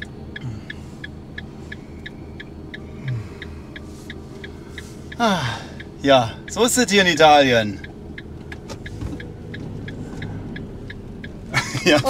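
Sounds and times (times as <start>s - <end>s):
engine hum: 0.0s - 12.0s
turn signal ticking: 0.0s - 12.0s.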